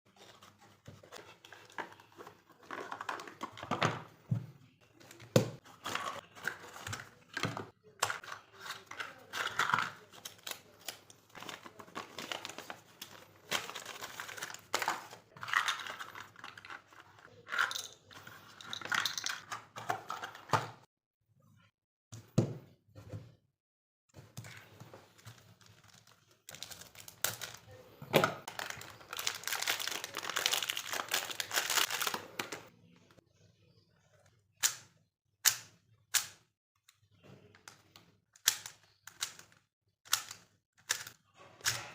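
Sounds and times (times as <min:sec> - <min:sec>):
plastic packaging crinkling and tearing: 0:08.1 - 0:16.8, 0:25.2 - 0:27.7, 0:28.5 - 0:32.7.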